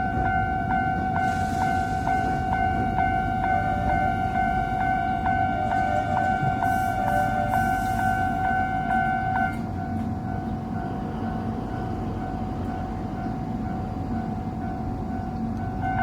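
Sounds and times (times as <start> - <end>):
level-crossing warning bell ringing: 0.0 - 16.0.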